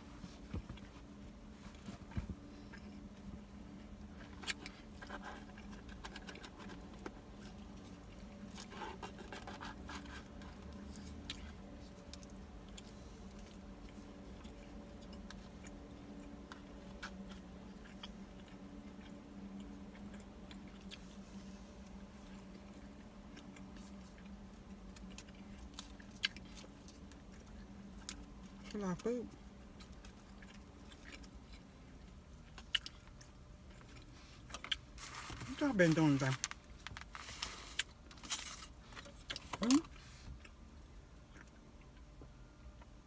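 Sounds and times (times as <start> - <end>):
chewing with soft crunches: 0.0 - 43.0
steady low hum: 0.0 - 43.0.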